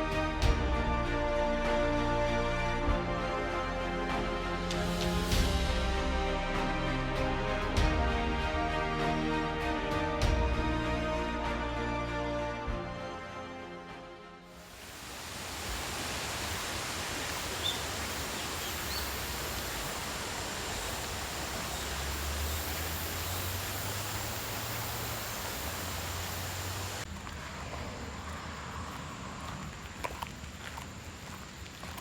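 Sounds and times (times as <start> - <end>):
waterfall rushing: 14.5 - 27.1.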